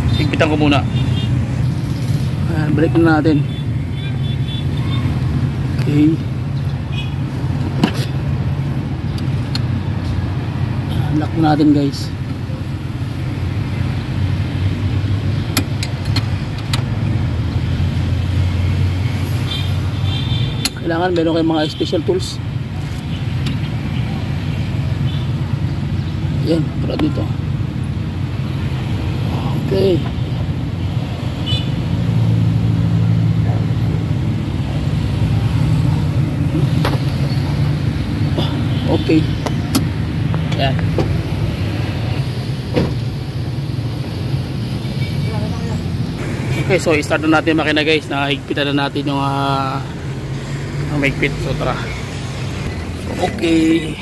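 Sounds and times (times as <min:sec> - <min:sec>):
engine humming: 0:22.5 - 0:54.0.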